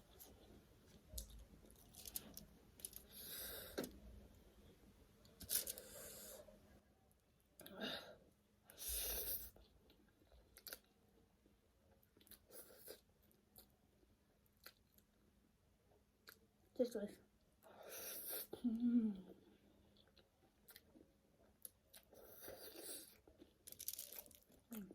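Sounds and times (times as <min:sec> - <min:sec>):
person chewing noodles: 0:08.7 - 0:11.0, 0:11.9 - 0:13.7, 0:19.8 - 0:24.9.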